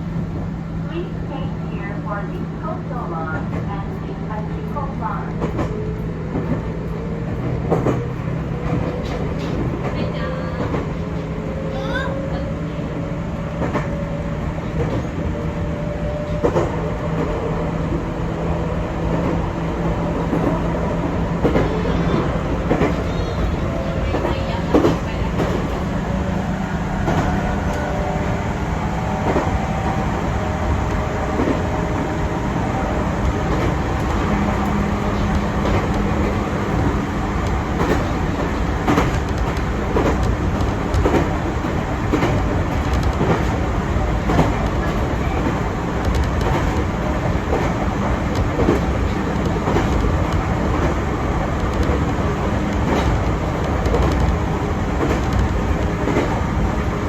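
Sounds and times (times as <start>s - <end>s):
train rumble inside carriage: 0.0s - 57.0s
wheels clacking over rail joints: 13.5s - 57.0s.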